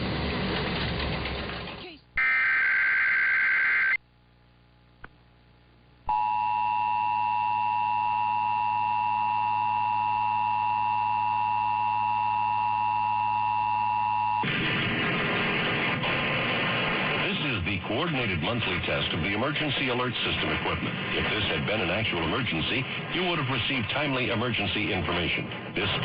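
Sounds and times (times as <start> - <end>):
shrill warbling data burst: 2.2 - 4.0.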